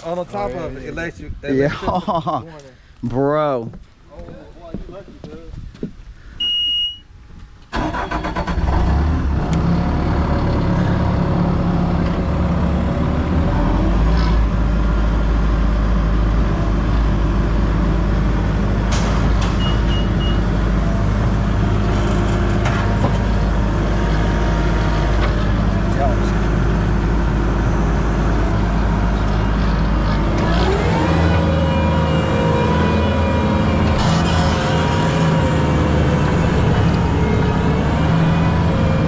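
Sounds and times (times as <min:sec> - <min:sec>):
short beeps: 0:06.4 - 0:07.1, 0:19.6 - 0:20.5
warning beep: 0:06.4 - 0:07.1, 0:19.6 - 0:20.4
diesel engine running: 0:07.7 - 0:39.0.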